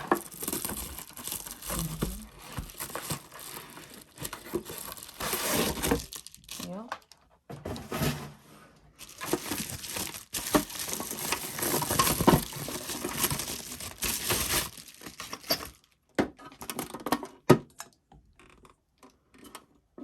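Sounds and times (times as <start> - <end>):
packaging crinkling: 0.0 - 6.8, 9.0 - 16.0.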